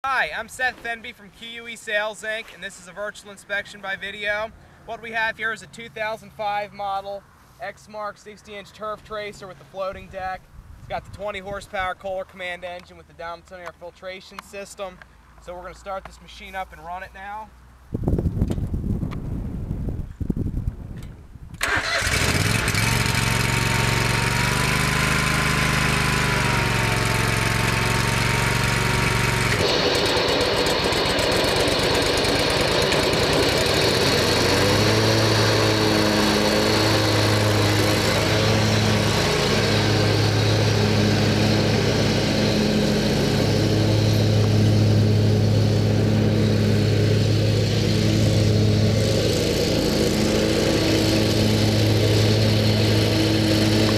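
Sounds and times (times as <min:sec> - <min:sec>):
mower engine starting and running: 0:21.6 - 0:53.9.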